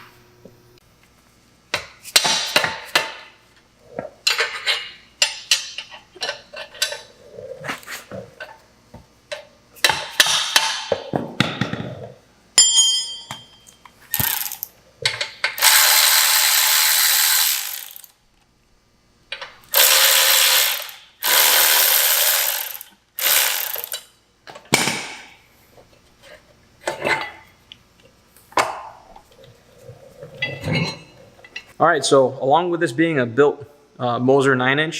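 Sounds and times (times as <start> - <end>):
ratchet wrench running: 14.1 - 14.7, 15.5 - 18.2, 19.7 - 24.1.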